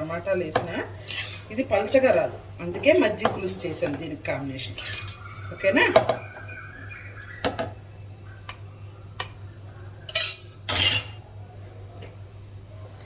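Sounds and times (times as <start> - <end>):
steady low hum: 0.0 - 13.0
spoon scraping pot: 0.5 - 6.4
metal spoon clinking in pot: 4.7 - 5.2, 10.1 - 11.2.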